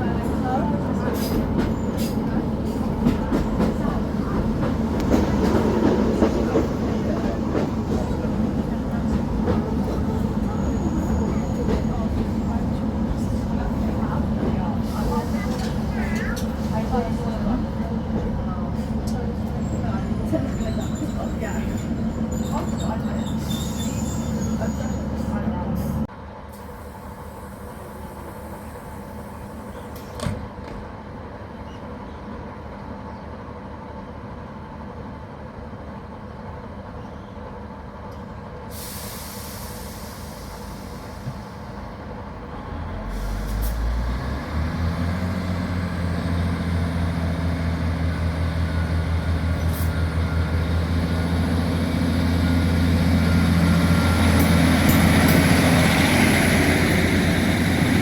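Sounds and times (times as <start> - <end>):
diesel engine of train: 0.0 - 58.0
hiss of air: 38.7 - 41.7.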